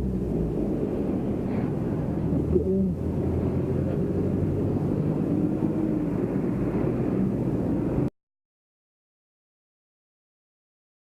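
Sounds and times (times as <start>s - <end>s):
muffled wind noise: 0.0s - 8.1s.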